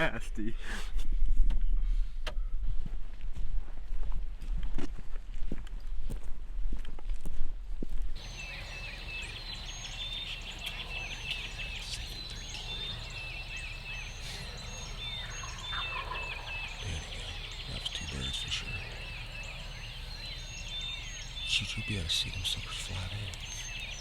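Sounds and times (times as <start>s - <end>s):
songbirds chirping: 0.0s - 4.5s, 8.2s - 24.0s
turkey gobbling: 8.2s - 24.0s.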